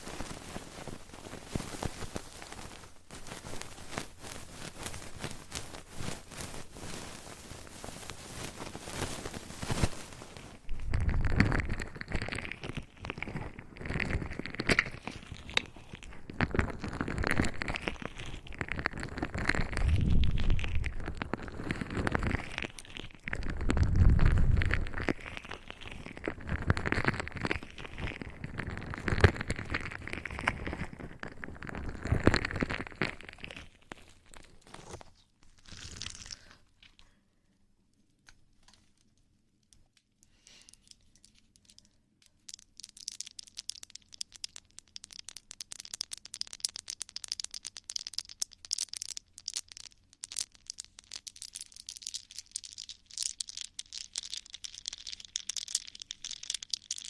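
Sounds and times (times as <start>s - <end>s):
crisp high-pitched crackling: 0.0s - 36.5s, 40.3s - 57.0s
crinkling and rustling: 0.0s - 37.2s, 37.9s - 57.0s.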